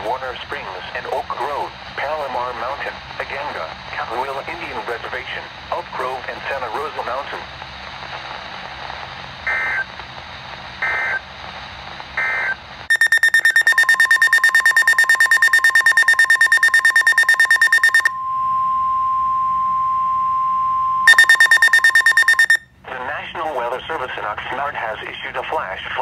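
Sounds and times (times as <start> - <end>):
steady radio warning tone: 12.2 - 22.6
rapid electronic alarm beeps: 12.3 - 18.2, 21.0 - 22.6
digital data bursts: 12.9 - 18.1, 21.1 - 22.6.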